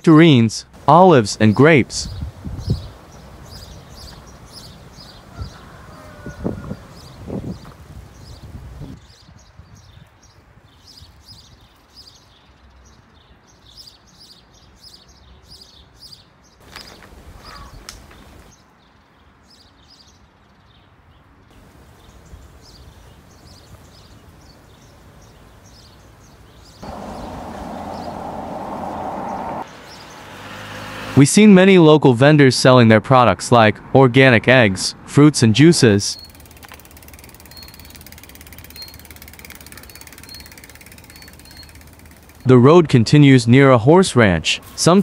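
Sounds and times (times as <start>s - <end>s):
small birds chirping: 1.4s - 30.4s, 36.0s - 42.5s
low rumbling outdoor background: 21.2s - 31.2s.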